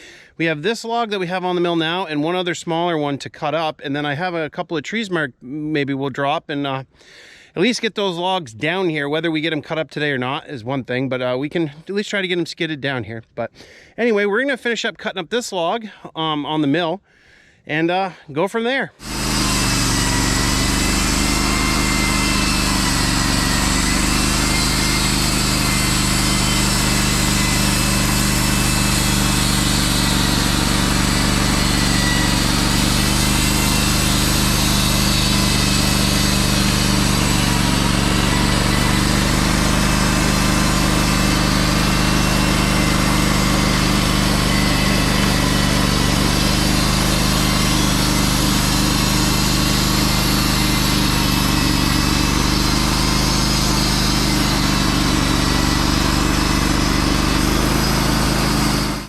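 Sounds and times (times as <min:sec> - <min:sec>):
band blade cutting log: 0:19.0 - 0:59.0
sawmill engine drone: 0:19.0 - 0:59.0.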